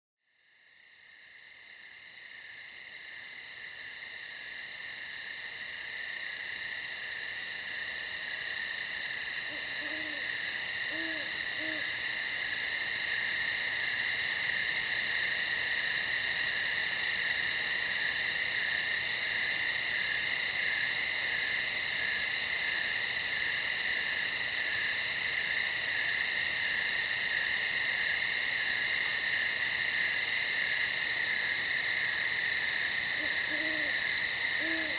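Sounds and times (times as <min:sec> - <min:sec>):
night insects chorus: 0:00.3 - 0:34.9
faint low hoots: 0:09.5 - 0:11.9, 0:33.2 - 0:34.0, 0:34.6 - 0:34.9.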